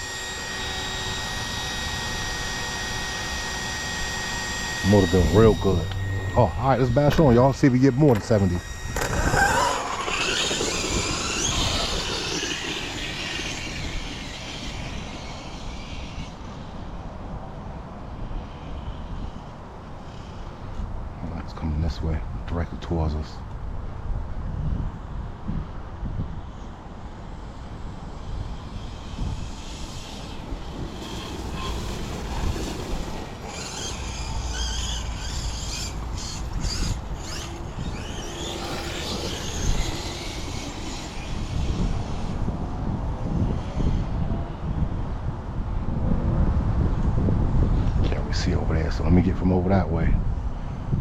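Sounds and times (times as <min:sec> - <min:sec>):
electric rc truck motor whining: 0:00.0 - 0:21.0, 0:26.2 - 0:48.5
wind rumble on microphone: 0:00.0 - 0:51.0.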